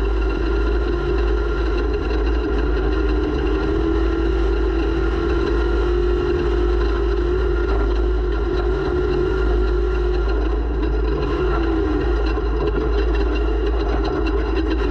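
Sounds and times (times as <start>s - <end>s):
race vehicle engine running hard: 0.0s - 14.9s.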